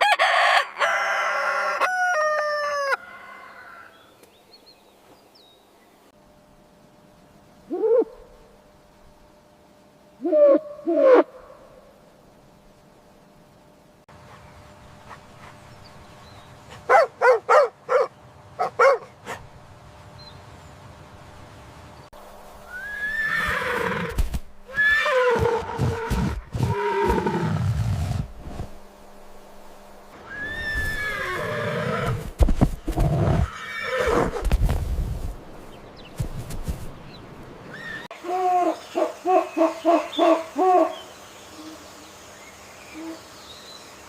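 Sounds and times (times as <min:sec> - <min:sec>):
horse neighing: 0:22.7 - 0:27.7, 0:30.2 - 0:32.2, 0:33.2 - 0:34.4.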